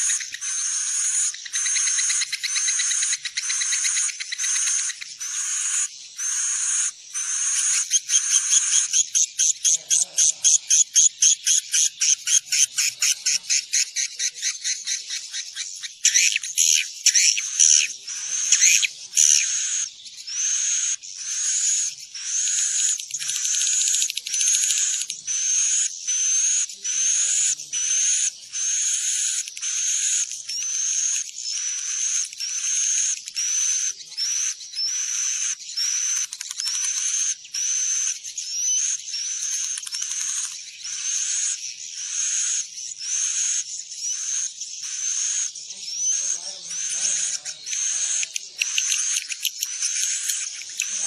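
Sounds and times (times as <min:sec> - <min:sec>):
swiftlets chirping: 0:45.0 - 0:51.0.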